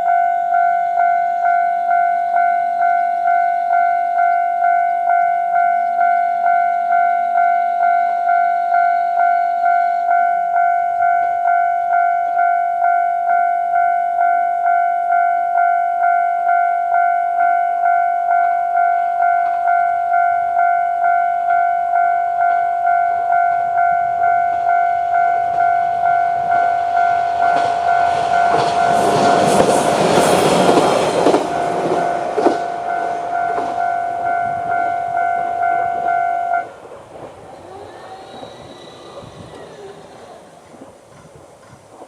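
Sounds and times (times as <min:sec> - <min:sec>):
level-crossing electronic bell: 0:00.0 - 0:36.8
railcar passing: 0:00.0 - 0:42.0
wheels clicking over rail joints: 0:25.4 - 0:42.0.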